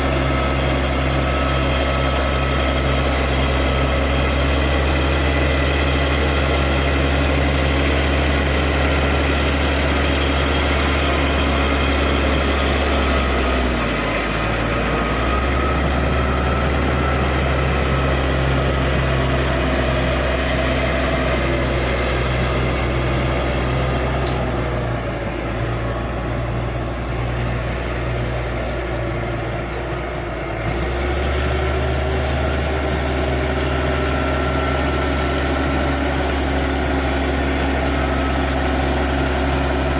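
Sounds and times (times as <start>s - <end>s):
bulldozer diesel engine running: 0.0s - 39.9s.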